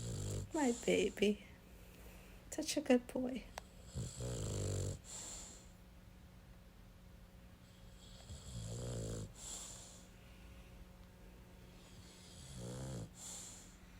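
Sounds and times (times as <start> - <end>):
dog snoring: 0.0 - 1.3, 3.6 - 5.7, 7.6 - 10.1, 11.8 - 13.8.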